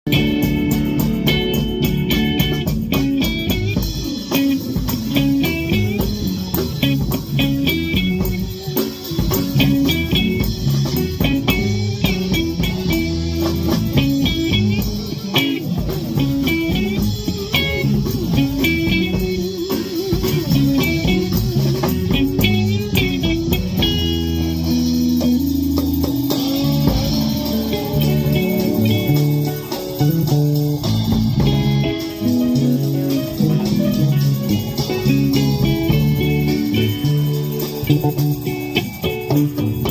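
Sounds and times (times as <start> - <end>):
bass guitar: 0.0 - 39.9
electric guitar lines: 0.0 - 39.9.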